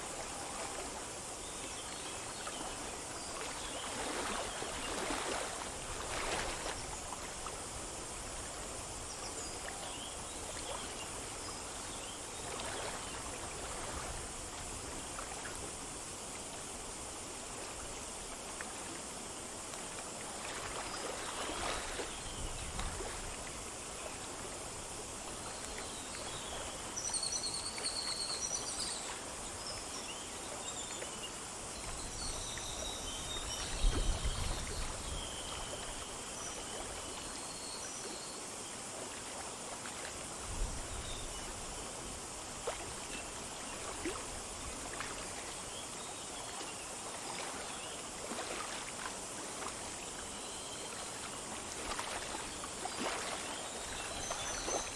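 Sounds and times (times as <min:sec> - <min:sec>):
stream flowing over stones: 0:41.5 - 0:54.9.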